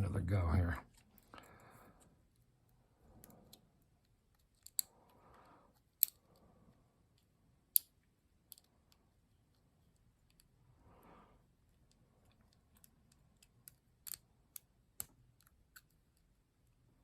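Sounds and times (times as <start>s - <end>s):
lock pick clicks and scrapes: 4.4s - 4.9s, 5.8s - 6.3s.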